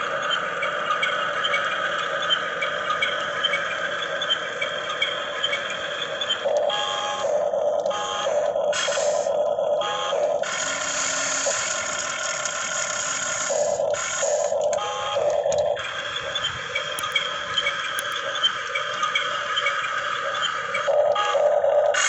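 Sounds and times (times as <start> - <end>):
small electric motors whining: 10.2 - 22.0.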